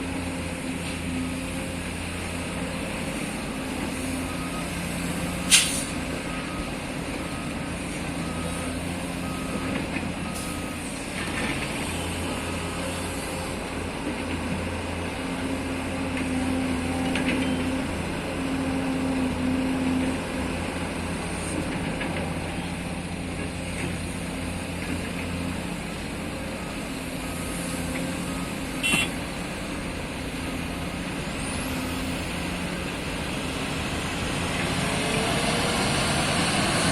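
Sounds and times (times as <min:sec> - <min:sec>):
excavator diesel engines: 0:00.0 - 0:36.9
backup alarm beeping: 0:28.5 - 0:29.2.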